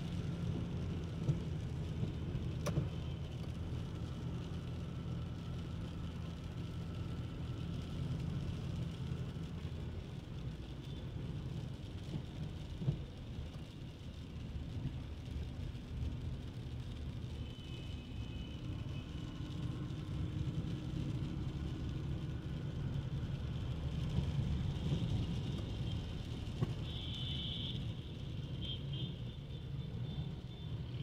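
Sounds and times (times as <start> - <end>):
street traffic rumble: 0.0 - 31.0.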